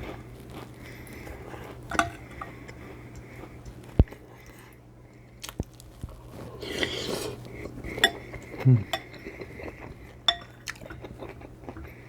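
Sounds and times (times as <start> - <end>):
chewing and mouth sounds: 0.0 - 12.0.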